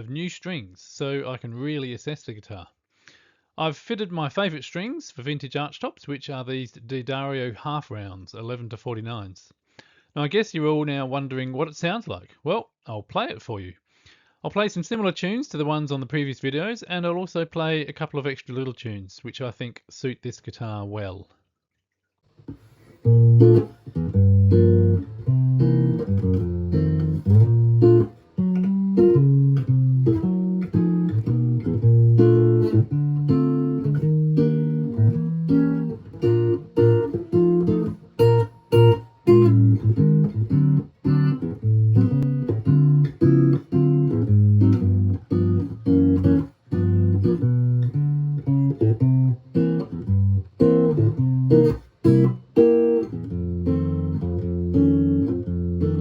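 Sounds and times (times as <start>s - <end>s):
guitar playing chords: 22.9s - 56.0s.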